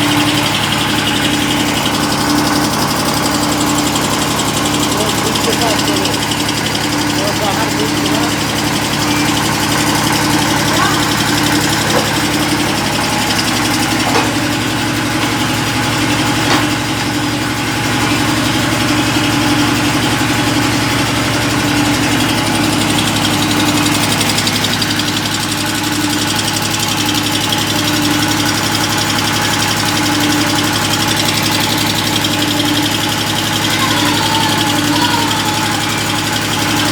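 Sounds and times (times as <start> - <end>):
low motor hum with pulsing whir: 0.0 - 26.3.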